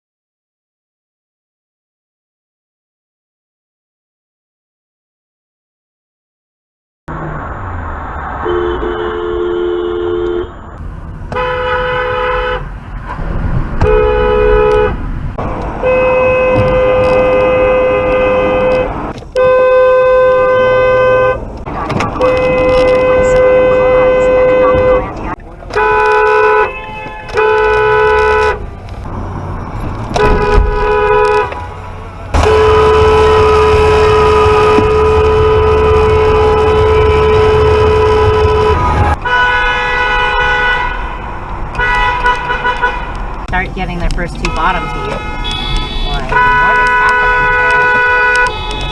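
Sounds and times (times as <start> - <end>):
low vehicle rumble: 7.1 - 48.9
road noise: 7.1 - 48.9
car horns honking: 8.3 - 12.8, 13.7 - 28.8, 30.0 - 48.9.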